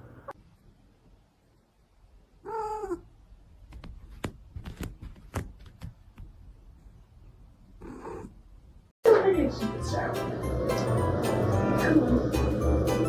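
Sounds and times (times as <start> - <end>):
cat meowing: 2.4 - 3.1, 7.8 - 8.3.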